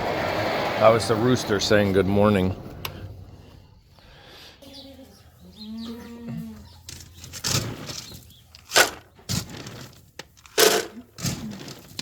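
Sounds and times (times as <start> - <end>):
farm animal call: 4.1 - 7.4.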